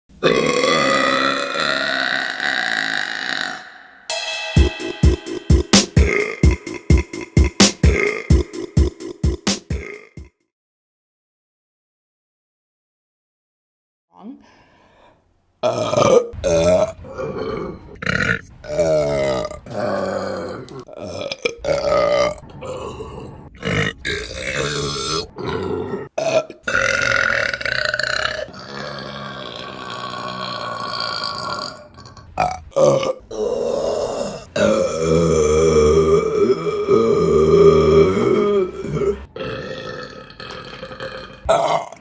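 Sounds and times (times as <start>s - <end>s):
women burping: 0.2s - 3.7s.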